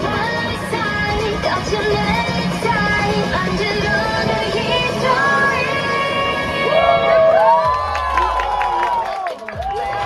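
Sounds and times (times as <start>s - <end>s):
dance music: 0.0s - 10.0s
audience cheering and whooping: 6.6s - 10.0s.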